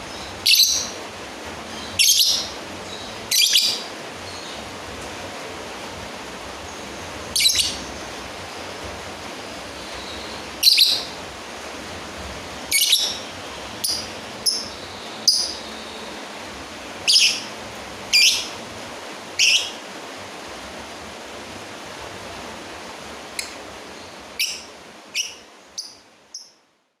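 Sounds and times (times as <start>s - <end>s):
steady hiss: 0.0s - 27.0s
lovebird shrill calls: 0.3s - 1.0s, 1.8s - 3.9s, 7.3s - 7.9s, 10.0s - 11.2s, 12.7s - 15.7s, 17.0s - 17.5s, 18.1s - 18.6s, 19.4s - 19.8s, 24.4s - 26.6s.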